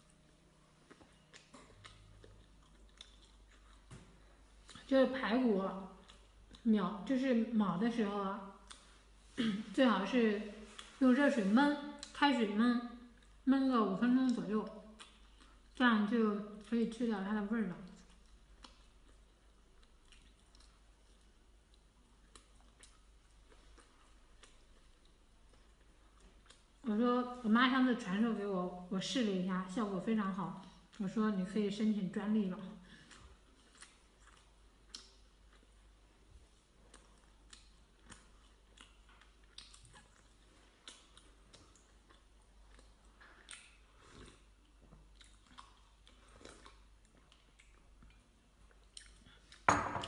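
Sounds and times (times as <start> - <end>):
chewing food: 0.0 - 4.9, 5.8 - 6.7, 8.5 - 9.4, 13.1 - 13.5, 14.2 - 15.9, 17.7 - 26.9, 32.9 - 49.7.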